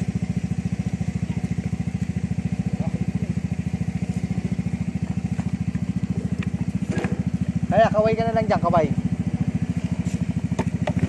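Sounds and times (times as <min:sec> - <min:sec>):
scooter engine idling: 0:00.0 - 0:11.0.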